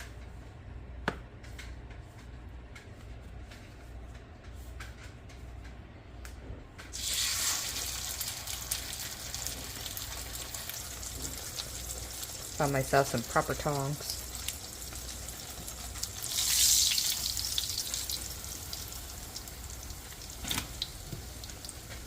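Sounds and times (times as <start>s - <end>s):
grease sizzling in frying pan: 6.9s - 22.0s.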